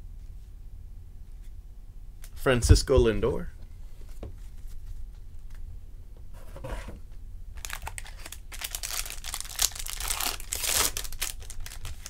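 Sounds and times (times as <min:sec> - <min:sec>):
foil wrapper crinkling and tearing: 0:07.6 - 0:12.0.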